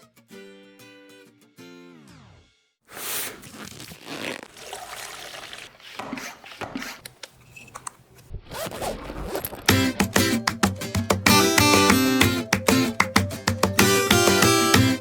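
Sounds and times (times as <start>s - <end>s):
rasping scrapes: 5.7s - 7.8s.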